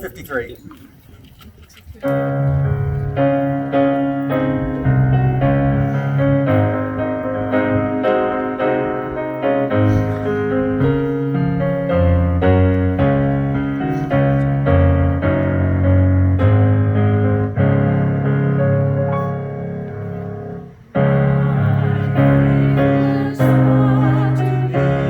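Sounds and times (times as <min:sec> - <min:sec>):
piano playing slow hymn chords: 0:02.0 - 0:25.0.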